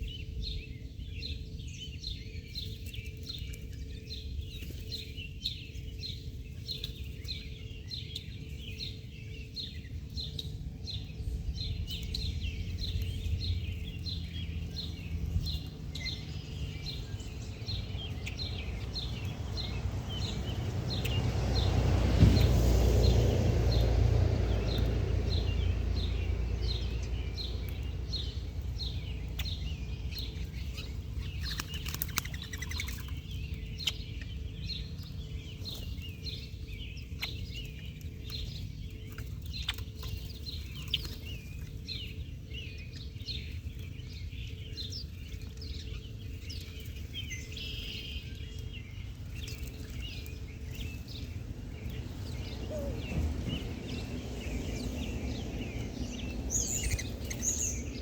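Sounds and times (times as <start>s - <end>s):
small bird chirping: 0.0s - 21.7s, 23.0s - 58.0s
low outdoor rumble: 0.0s - 58.0s.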